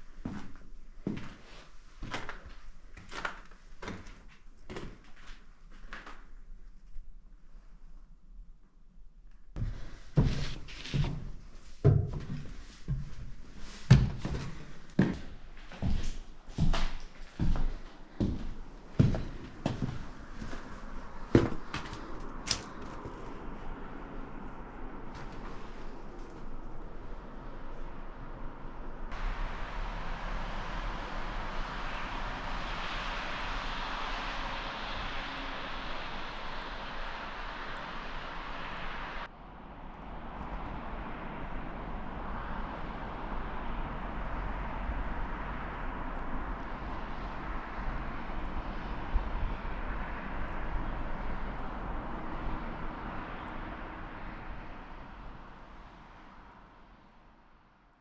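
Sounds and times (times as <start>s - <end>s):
rushing outdoor noise with rumble: 9.6s - 58.0s.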